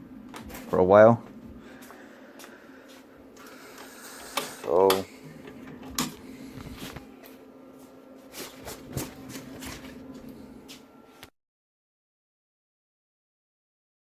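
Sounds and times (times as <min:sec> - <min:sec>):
steady low hum: 0:00.0 - 0:11.3.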